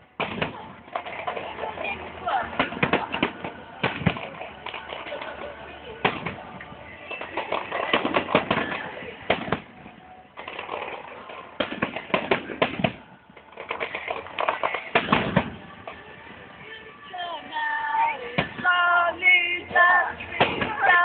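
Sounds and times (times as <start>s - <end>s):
fireworks bangs and crackles: 2.4s - 5.2s, 6.0s - 16.6s, 19.8s - 21.0s.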